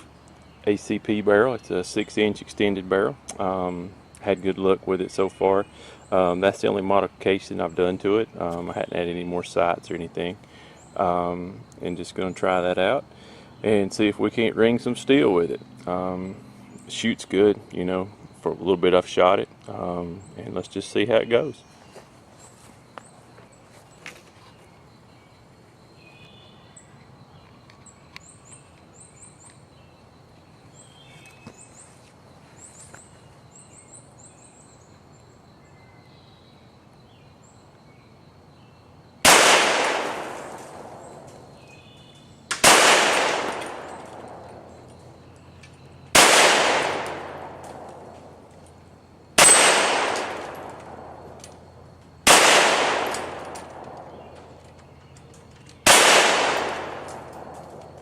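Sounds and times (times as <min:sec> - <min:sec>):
birds chirping: 0:00.0 - 0:58.0
pistol shots with echo: 0:39.2 - 0:41.7, 0:42.5 - 0:44.9, 0:46.1 - 0:48.4, 0:49.4 - 0:51.6, 0:52.2 - 0:54.6, 0:55.8 - 0:58.0.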